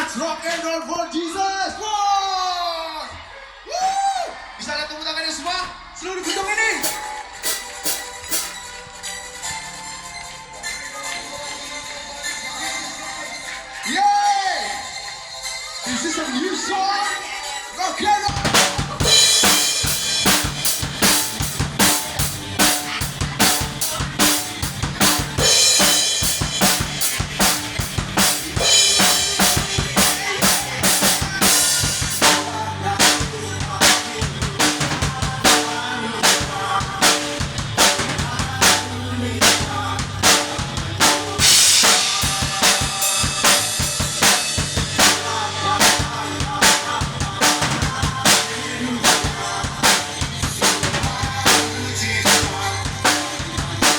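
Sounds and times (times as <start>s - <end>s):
kick and snare drum strokes: 6.7s - 8.7s, 18.3s - 53.9s
live rock band playing: 6.7s - 8.7s, 18.4s - 53.9s
cymbal crashes: 6.8s - 8.7s, 18.6s - 53.9s.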